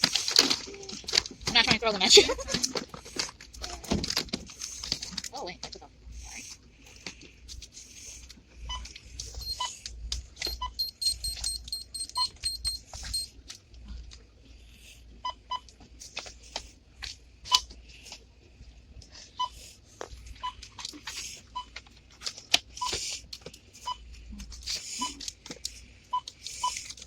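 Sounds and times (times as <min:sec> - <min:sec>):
barcode scanner beeping: 0:09.4 - 0:09.7, 0:10.4 - 0:13.3.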